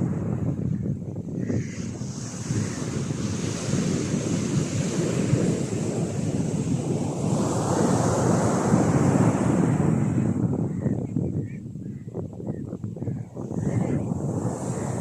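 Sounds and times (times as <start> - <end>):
wind buffeting microphone: 0.0 - 15.0
sea surf washing onto beach: 1.9 - 10.5, 14.0 - 15.0.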